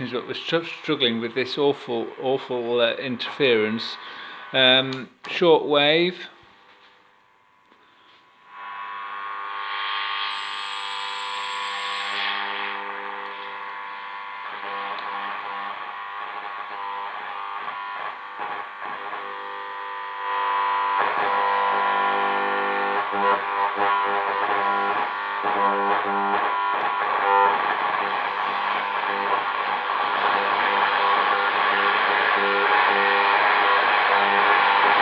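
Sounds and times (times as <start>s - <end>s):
radio interference: 8.6s - 35.0s
music from radio speaker: 9.6s - 35.0s.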